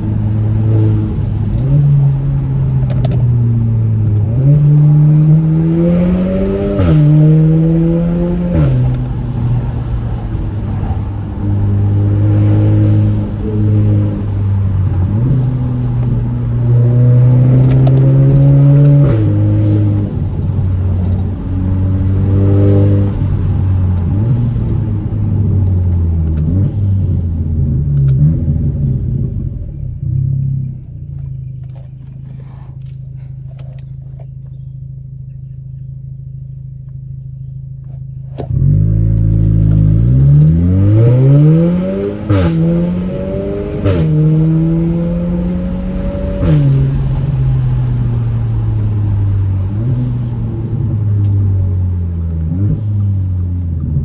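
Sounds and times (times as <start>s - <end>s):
sharp exhaust crack at gearshift: 0.0s - 28.5s, 37.7s - 53.4s
car engine accelerating hard: 0.0s - 54.0s.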